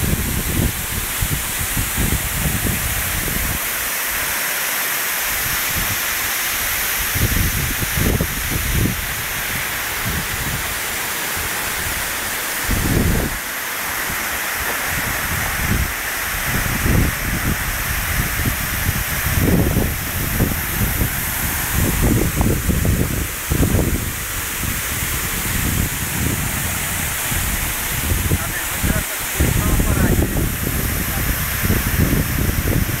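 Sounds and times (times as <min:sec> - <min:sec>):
wind buffeting microphone: 0:00.0 - 0:03.8, 0:07.0 - 0:33.0
water rushing over spillway: 0:00.0 - 0:33.0.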